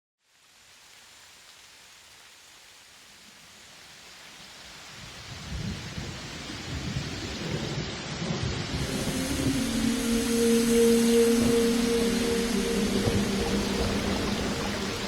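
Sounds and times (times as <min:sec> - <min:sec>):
falling water rushing: 0:00.6 - 0:15.0
deep rumble: 0:08.4 - 0:15.0.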